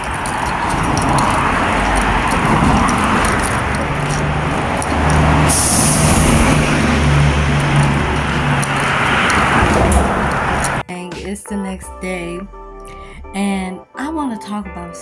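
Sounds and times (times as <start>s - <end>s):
large vehicle engine humming: 0.0s - 10.8s.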